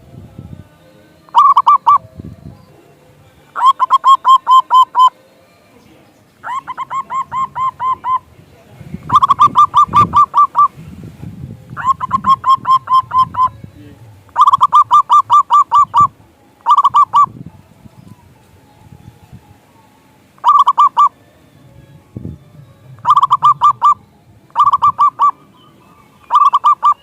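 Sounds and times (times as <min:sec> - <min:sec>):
dove cooing: 0:01.3 - 0:02.0, 0:03.5 - 0:05.2, 0:06.4 - 0:08.3, 0:09.0 - 0:10.8, 0:11.7 - 0:17.4, 0:20.4 - 0:21.2, 0:22.9 - 0:27.0.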